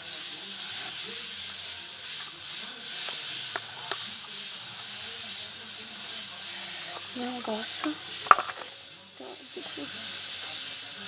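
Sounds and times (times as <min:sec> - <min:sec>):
faint voices: 0:00.0 - 0:11.0
high-pitched background hiss: 0:00.0 - 0:11.0.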